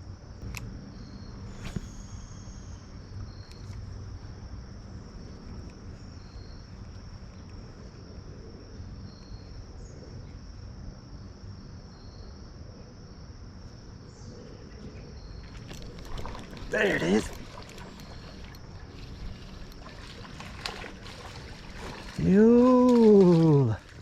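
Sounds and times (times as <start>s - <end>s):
crickets chirping: 0.0s - 24.0s.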